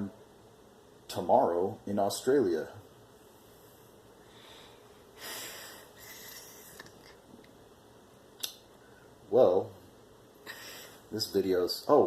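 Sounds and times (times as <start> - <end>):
noisy breaths: 3.2 - 6.9, 10.4 - 11.2.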